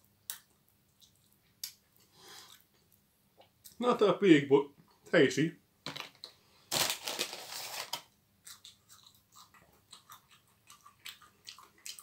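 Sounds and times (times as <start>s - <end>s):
person chewing crispy chicken: 8.4s - 12.0s.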